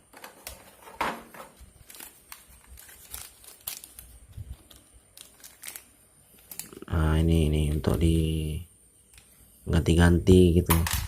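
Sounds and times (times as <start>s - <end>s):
plastic packaging crinkling: 0.0s - 8.0s.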